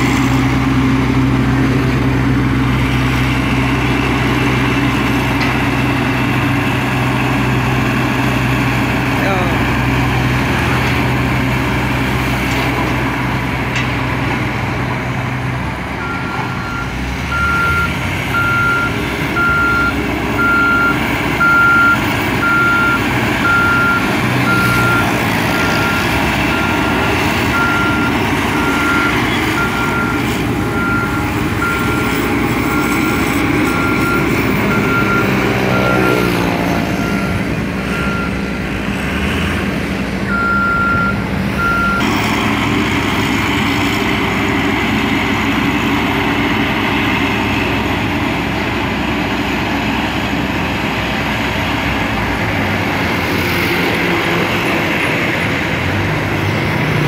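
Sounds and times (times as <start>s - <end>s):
diesel construction machine running: 0.0s - 57.0s
reversing alarm beeping: 16.0s - 38.6s, 40.3s - 42.1s.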